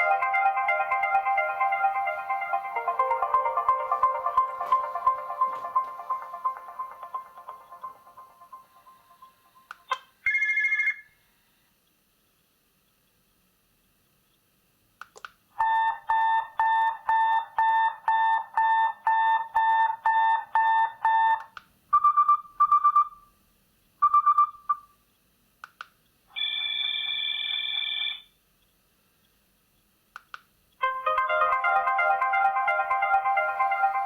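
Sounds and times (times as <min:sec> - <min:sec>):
phone beeping tone: 0:10.3 - 0:11.0.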